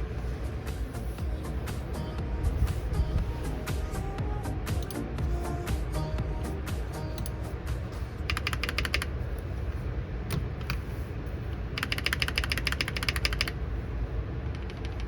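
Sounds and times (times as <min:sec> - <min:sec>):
mechanical keyboard clicking: 0:08.3 - 0:09.1, 0:11.8 - 0:13.6, 0:14.5 - 0:15.0.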